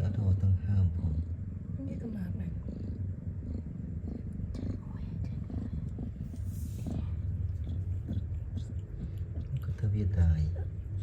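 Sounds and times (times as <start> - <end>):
cat purring: 0.0 - 11.0.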